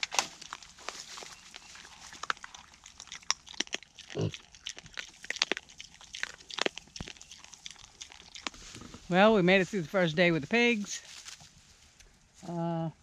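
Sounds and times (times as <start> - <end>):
young pigs grunting: 1.6 - 6.7.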